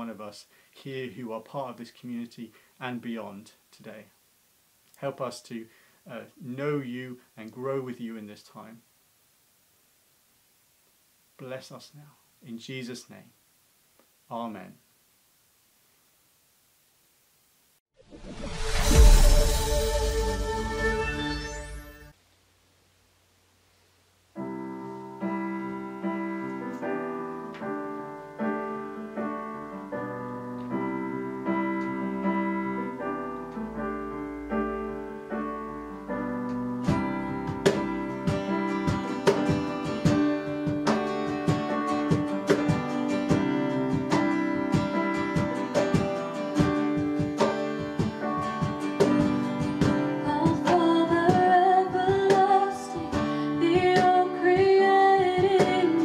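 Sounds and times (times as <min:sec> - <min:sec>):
sustained keyboard chords: 0:24.4 - 0:50.6
person singing: 0:50.1 - 0:56.0.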